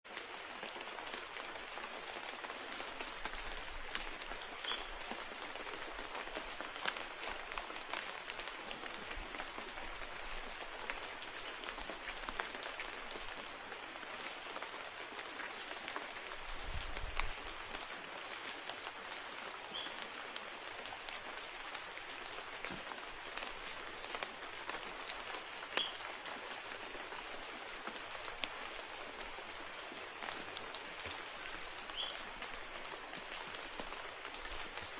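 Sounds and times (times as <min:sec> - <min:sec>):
rain pattering on foliage: 0:00.0 - 0:34.9.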